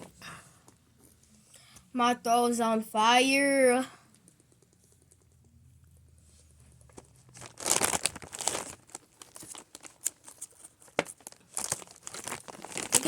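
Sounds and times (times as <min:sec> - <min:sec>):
plastic packaging crinkling: 0:06.8 - 0:13.0.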